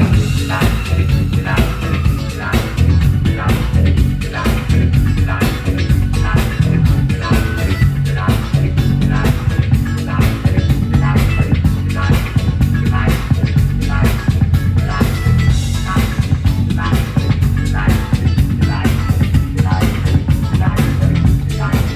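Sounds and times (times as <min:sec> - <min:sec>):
bass guitar: 0:00.0 - 0:21.9
electric guitar: 0:00.0 - 0:21.9
steady drum beat: 0:00.0 - 0:21.9.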